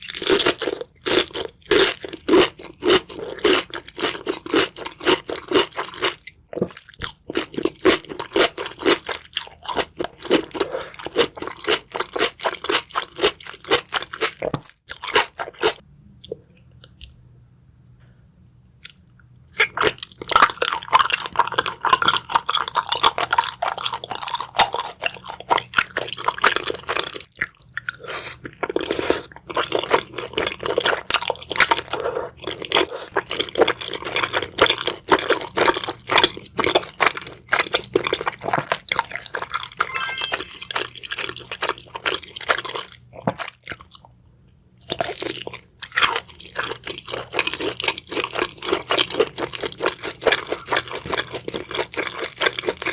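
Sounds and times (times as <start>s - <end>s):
crunching and chewing: 0.0s - 17.3s, 18.8s - 40.0s, 41.0s - 52.9s.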